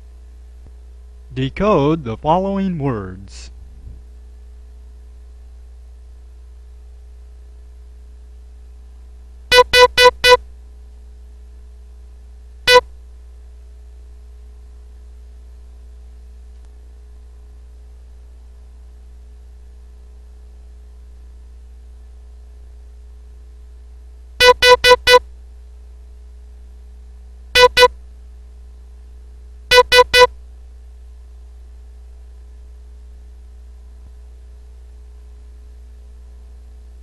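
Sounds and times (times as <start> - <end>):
morse code beeps: 9.5 - 10.4, 24.4 - 25.2, 27.6 - 27.9, 29.7 - 30.3.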